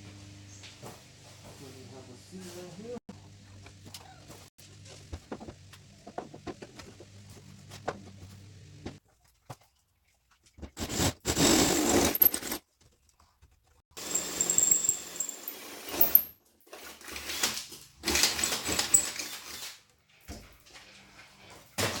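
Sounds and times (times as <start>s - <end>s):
power drill running: 14.0s - 16.2s.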